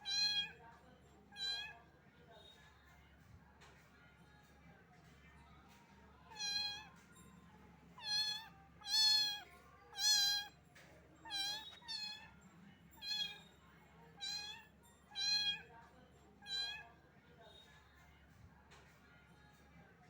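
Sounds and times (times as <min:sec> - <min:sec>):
kitten meowing: 0:08.0 - 0:09.4, 0:10.0 - 0:10.5, 0:11.2 - 0:12.3.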